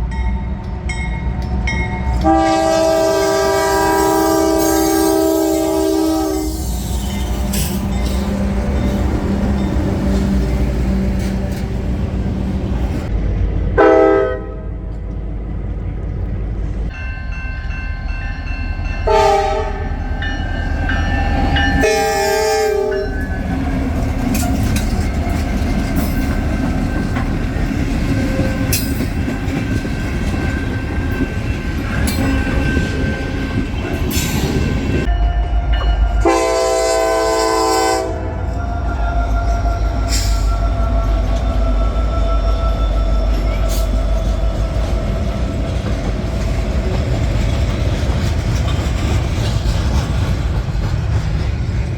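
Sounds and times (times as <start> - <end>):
trains rumbling on rails: 0.0 - 51.9
train horn blasts: 2.2 - 12.0, 13.8 - 14.7, 19.0 - 23.5, 35.0 - 45.8.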